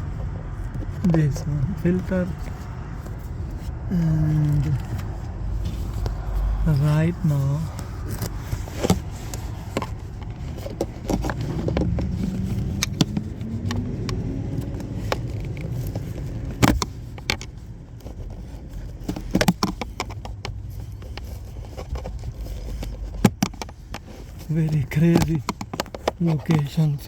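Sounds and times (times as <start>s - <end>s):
low vehicle rumble: 0.0s - 27.0s
plastic clicks and knocks: 19.0s - 26.8s.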